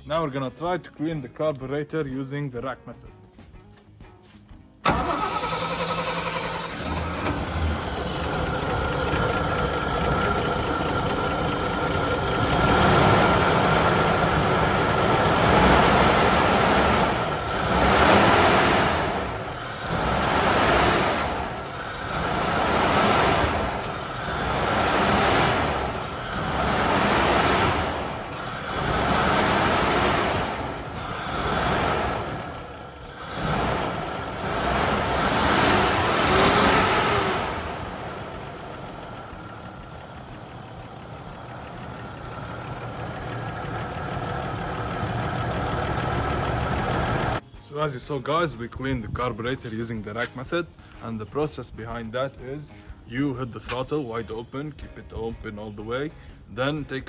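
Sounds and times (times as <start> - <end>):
engine at full throttle: 4.8 - 47.4
air sucking and squealing: 4.9 - 47.4.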